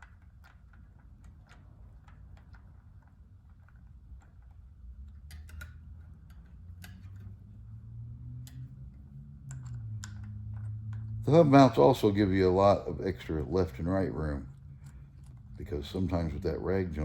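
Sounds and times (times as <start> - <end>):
tool clicks and taps on metal: 0.0 - 7.3, 8.4 - 11.2
low hum: 6.0 - 17.0.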